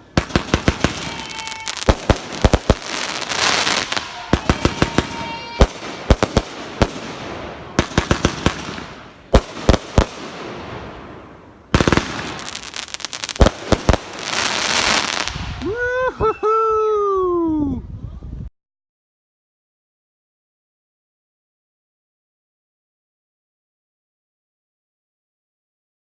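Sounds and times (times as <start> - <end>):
firework crackling: 0.0 - 15.8
firework launch reports and bursts: 0.0 - 15.8.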